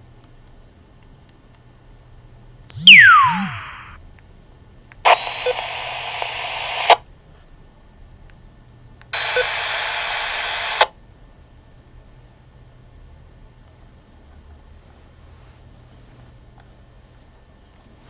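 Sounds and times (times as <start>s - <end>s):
faint steady whistle: 2.7s - 4.0s
radio static hiss: 2.7s - 4.0s, 5.1s - 7.0s, 9.2s - 10.9s.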